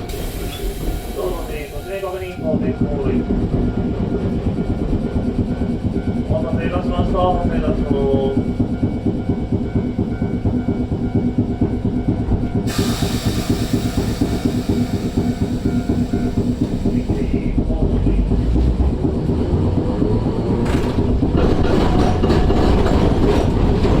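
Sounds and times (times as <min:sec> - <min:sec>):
hiss: 0:00.0 - 0:01.8, 0:12.7 - 0:17.3
streetcar motor hum and rumble: 0:00.0 - 0:24.0
wheel clacks over rail joints: 0:12.1 - 0:24.0.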